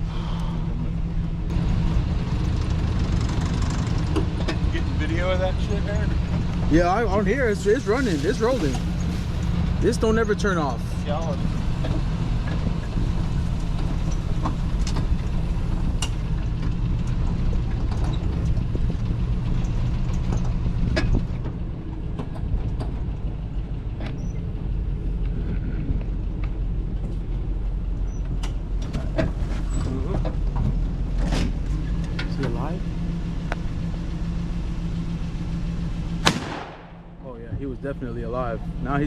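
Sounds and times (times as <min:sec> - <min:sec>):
vehicle engine running: 0:00.0 - 0:39.0
knocks and rattles: 0:01.5 - 0:06.7.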